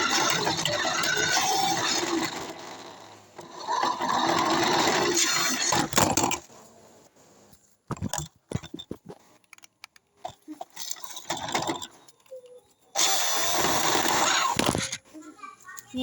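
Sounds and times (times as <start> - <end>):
rc car motor scraping and rattling: 0.0 - 6.8, 7.9 - 12.4, 13.0 - 15.0
sharp clicks and knocks: 7.9 - 12.4, 13.0 - 15.1.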